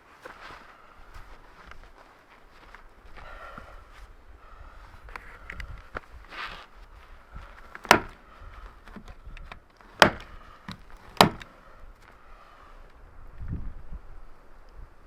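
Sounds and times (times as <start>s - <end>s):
sharp knocks on wood: 7.8s - 8.2s, 10.0s - 10.3s, 11.2s - 11.5s.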